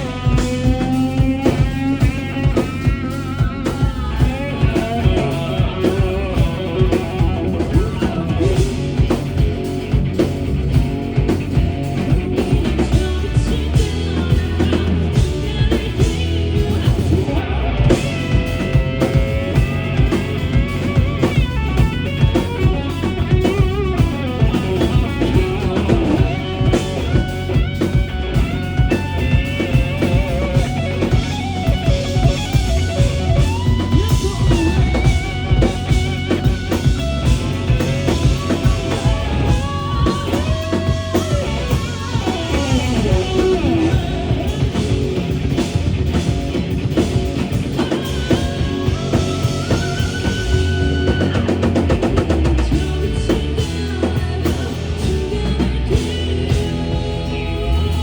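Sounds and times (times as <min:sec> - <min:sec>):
drum kit: 0:00.0 - 0:58.0
electric guitar bending notes: 0:00.0 - 0:58.0.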